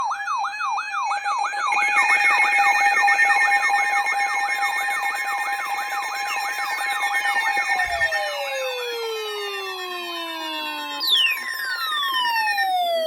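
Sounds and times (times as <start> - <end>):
electronic siren yelping: 0.0 - 13.0
steady high alert tones: 6.4 - 13.0.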